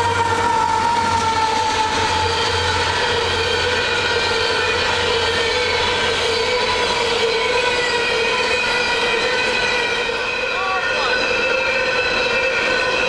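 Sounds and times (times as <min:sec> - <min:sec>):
train rolling on tracks: 0:00.0 - 0:13.0.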